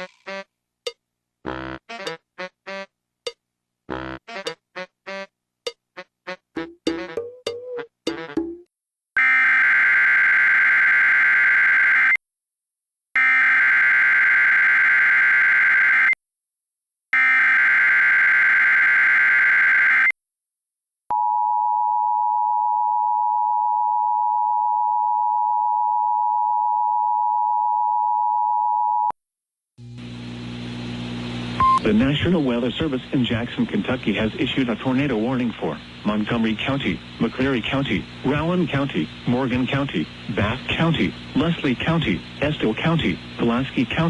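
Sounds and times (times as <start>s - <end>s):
steady two-tone attention signal: 31.6s - 32.0s.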